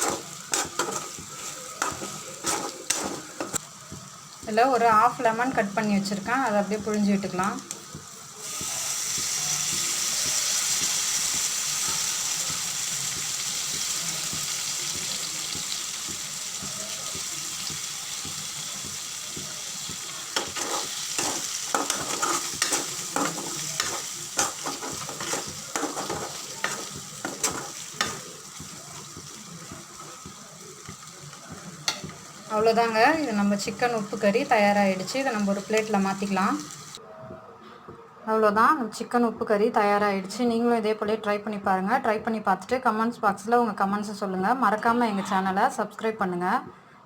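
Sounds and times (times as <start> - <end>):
spatula scraping a pan: 0.0 - 3.6, 20.3 - 28.4
chicken sizzling in oil: 0.0 - 37.0.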